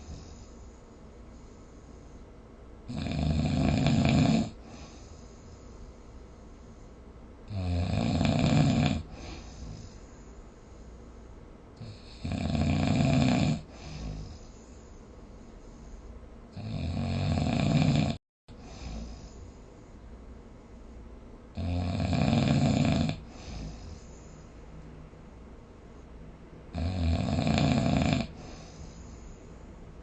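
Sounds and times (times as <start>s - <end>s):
quiet breathing: 0.0s - 3.0s, 3.8s - 12.5s, 13.1s - 16.8s, 17.8s - 21.6s, 22.5s - 26.8s, 27.6s - 30.0s
person snoring: 2.9s - 5.4s, 7.5s - 10.0s, 11.8s - 14.6s, 16.5s - 19.4s, 21.6s - 24.4s, 26.7s - 29.3s.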